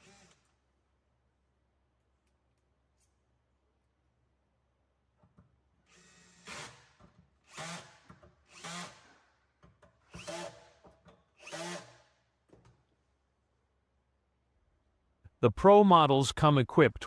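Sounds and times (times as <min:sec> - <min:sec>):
power drill driving screws: 0:00.0 - 0:00.5, 0:05.9 - 0:09.2, 0:10.1 - 0:10.8, 0:11.4 - 0:12.1.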